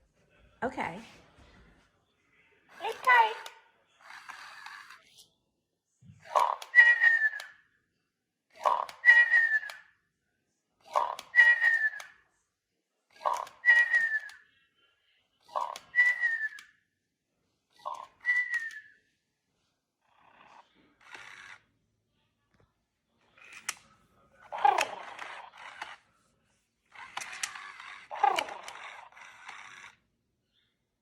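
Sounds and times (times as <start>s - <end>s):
electronic parrot squawks: 2.8s - 3.5s, 6.3s - 7.5s, 8.6s - 9.8s, 10.9s - 12.1s, 24.5s - 26.0s, 26.9s - 29.9s
electronic parrot whistles: 6.4s - 7.6s, 8.6s - 9.9s, 11.0s - 12.2s, 13.2s - 14.4s, 15.6s - 16.7s, 17.8s - 19.0s.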